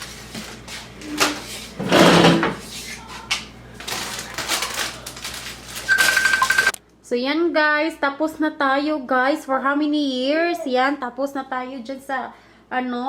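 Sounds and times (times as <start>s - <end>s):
packaging rustling: 3.8s - 6.8s.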